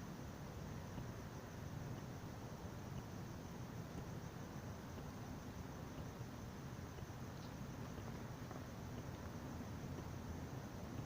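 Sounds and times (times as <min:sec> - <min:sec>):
faint hiss: 0:00.0 - 0:11.0.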